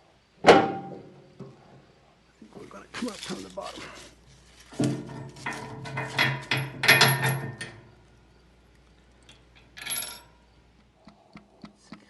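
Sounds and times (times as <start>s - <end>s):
brief rustle: 2.5s - 5.8s
metal parts and tools clinking: 3.0s - 8.0s, 9.2s - 10.4s.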